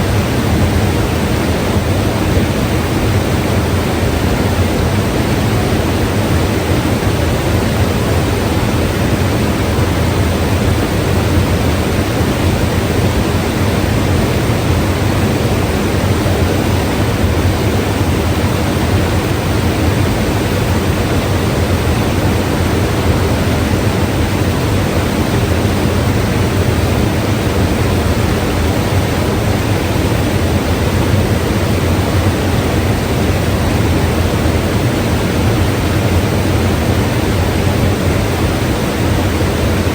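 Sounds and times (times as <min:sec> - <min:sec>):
river rushing: 0:00.0 - 0:39.9.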